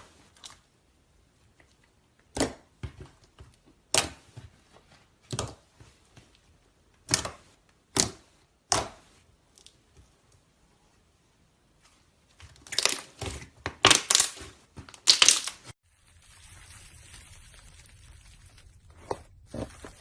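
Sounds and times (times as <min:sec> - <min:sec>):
faint slime crackles: 0:12.3 - 0:20.0.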